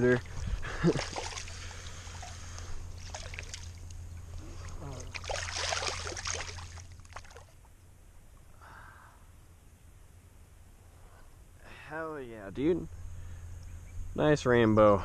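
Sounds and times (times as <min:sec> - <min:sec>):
water splashing and sloshing: 0:00.0 - 0:07.7.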